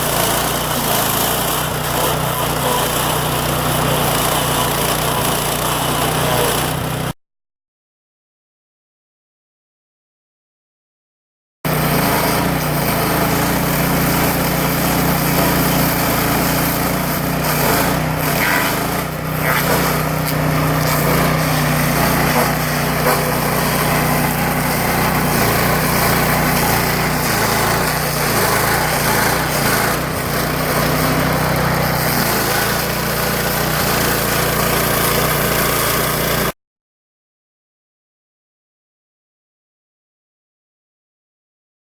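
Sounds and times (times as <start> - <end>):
cutter wheel grinding wood: 0.0 - 7.2, 11.7 - 36.5
small petrol engine running: 0.0 - 7.2, 11.7 - 36.5.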